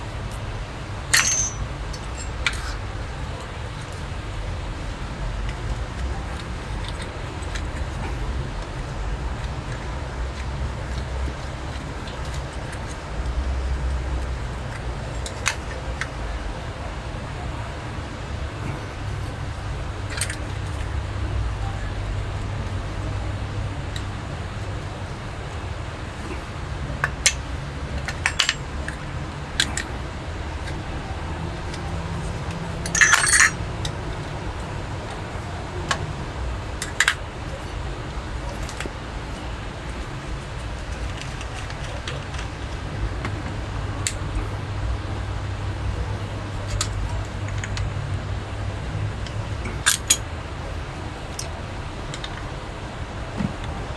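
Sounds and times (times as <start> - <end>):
metal tap parts clicking: 1.1 - 2.8, 5.5 - 8.1, 28.0 - 29.0, 29.6 - 29.9, 31.7 - 34.2, 36.8 - 37.7, 49.2 - 50.2
metal faucet parts clinking: 1.1 - 4.1, 5.5 - 16.1, 20.1 - 20.9, 28.0 - 30.9, 31.6 - 34.2, 36.8 - 37.7, 38.4 - 40.0, 46.5 - 48.0, 49.2 - 50.2
rattling clatter: 31.7 - 34.0.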